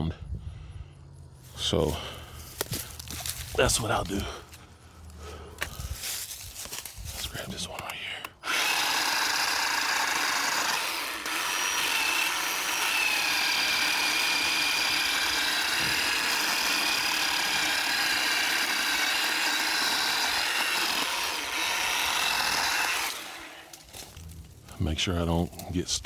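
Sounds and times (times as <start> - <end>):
electric chainsaw cutting brush: 2.2 - 4.6, 8.4 - 24.4.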